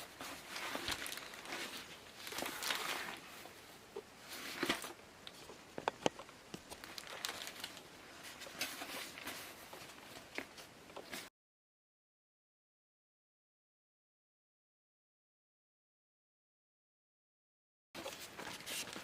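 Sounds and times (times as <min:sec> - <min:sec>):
rustling and crinkling: 0:00.0 - 0:11.3, 0:18.0 - 0:19.0
handling clicks and taps: 0:05.8 - 0:06.7.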